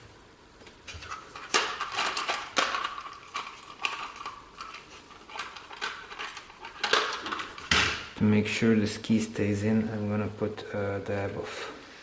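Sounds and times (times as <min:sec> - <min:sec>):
small metal parts clinking: 0:01.0 - 0:08.0.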